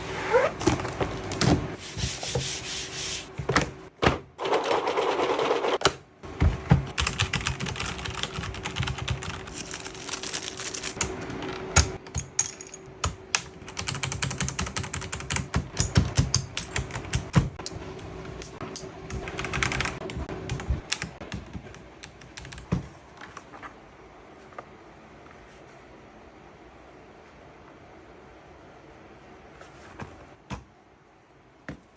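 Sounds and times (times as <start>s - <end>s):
keyboard keys clicking: 6.9s - 11.9s, 18.4s - 22.7s.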